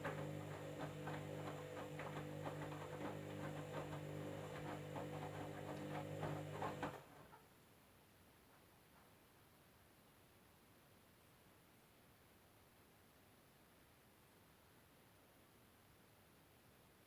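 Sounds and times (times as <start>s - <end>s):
washing machine motor humming: 0.0s - 7.1s
laundry tumbling with knocks: 0.0s - 7.3s.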